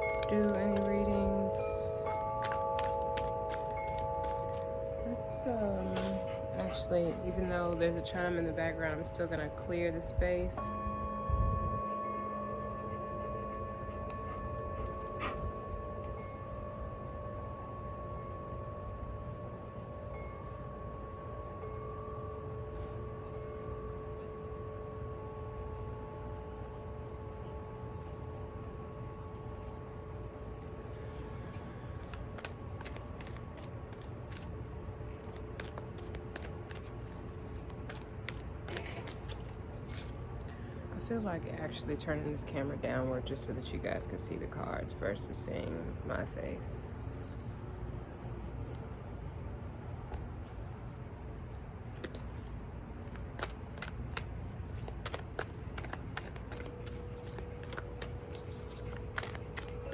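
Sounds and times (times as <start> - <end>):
cards shuffling: 0.0 - 4.7, 30.6 - 40.4, 51.5 - 59.9
long steady chime: 0.0 - 35.5
low background hum: 0.0 - 59.9.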